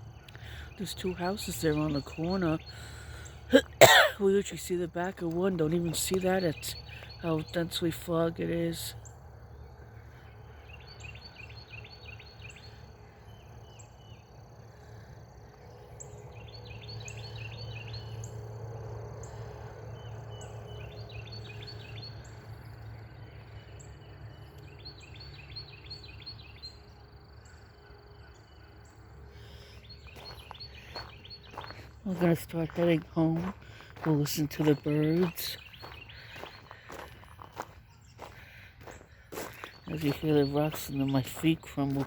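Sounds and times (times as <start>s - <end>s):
bird chirping quick runs: 24.7s - 42.0s.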